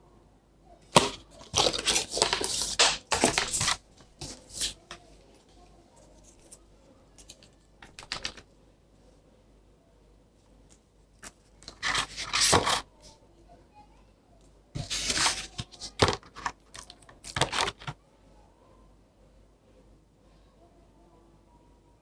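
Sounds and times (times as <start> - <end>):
packaging click: 1.0 - 4.9, 7.2 - 8.4, 11.7 - 12.8, 14.8 - 18.0
packaging tearing and crinkling: 1.0 - 5.0, 7.2 - 8.4, 11.7 - 12.8, 14.8 - 17.9
small clicks and rustles: 7.2 - 8.5.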